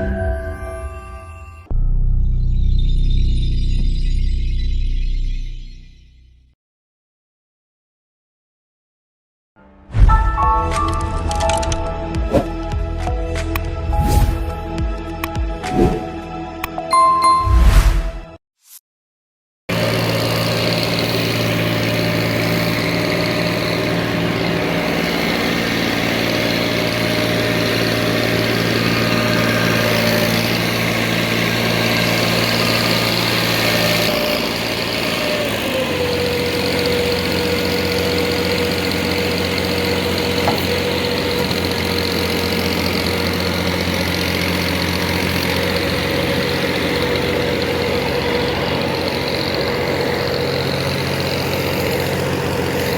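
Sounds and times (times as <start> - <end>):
feed mixer machine running: 19.7 - 52.9.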